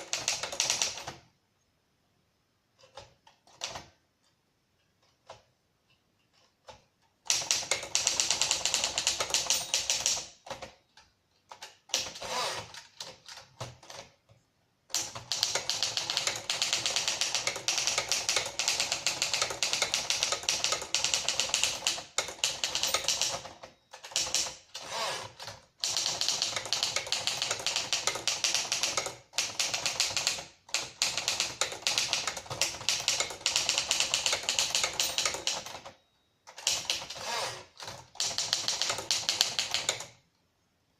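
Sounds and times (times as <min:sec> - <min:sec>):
typewriter key strikes: 0:07.3 - 0:10.7, 0:14.9 - 0:24.8, 0:25.8 - 0:35.9, 0:36.5 - 0:37.2, 0:37.8 - 0:40.1.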